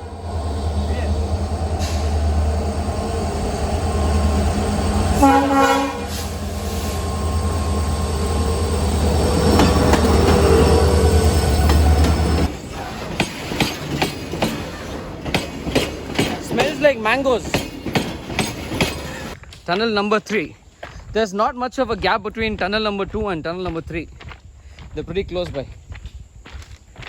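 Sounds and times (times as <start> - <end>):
train passing rumble: 0.0 - 19.4
train horn blast: 4.7 - 11.4
wheels clacking over rails: 6.1 - 19.4.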